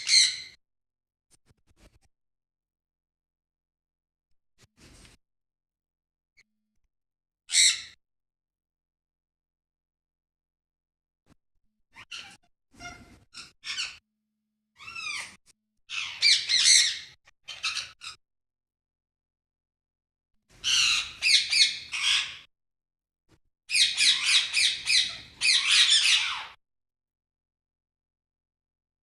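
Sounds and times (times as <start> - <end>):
parrots squawking and screeching: 0.0 - 0.6, 7.5 - 8.0, 12.0 - 14.0, 14.8 - 18.2, 20.6 - 22.5, 23.7 - 26.6.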